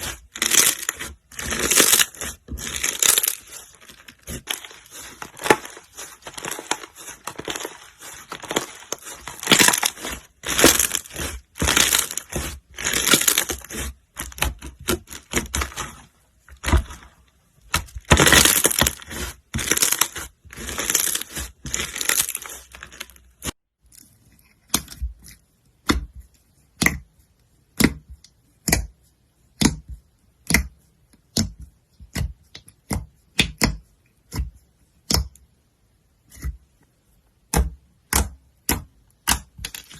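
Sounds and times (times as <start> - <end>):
slime popping: 0.0 - 16.0
slime squishing and crackling: 0.0 - 23.6.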